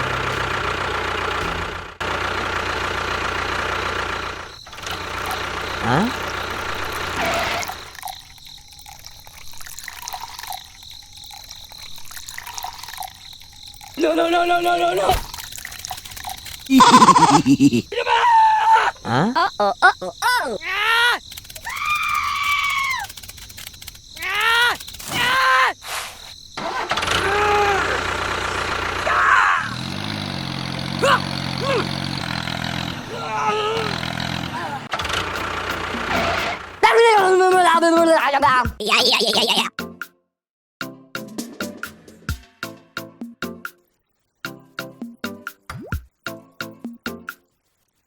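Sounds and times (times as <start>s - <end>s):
engine idling: 0.0s - 8.0s, 26.6s - 36.8s
water trickling and dripping: 7.6s - 16.7s
high gliding squeaks and calls: 20.2s - 26.5s.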